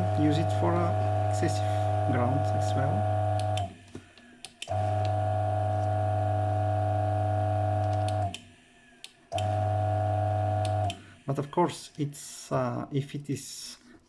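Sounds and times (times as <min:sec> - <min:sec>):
coffee grinder motor humming: 0:00.0 - 0:03.7, 0:04.7 - 0:08.3, 0:09.4 - 0:11.0
power switch clicks: 0:03.4 - 0:03.7.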